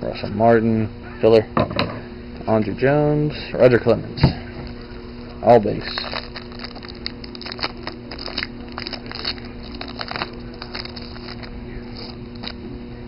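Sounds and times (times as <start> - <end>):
steady low hum: 0.0 - 13.0
wrapper crinkling and tearing: 5.2 - 12.6.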